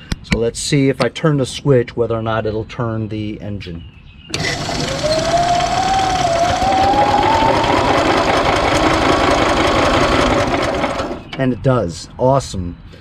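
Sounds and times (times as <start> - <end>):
starter-generator whine: 4.3 - 11.5.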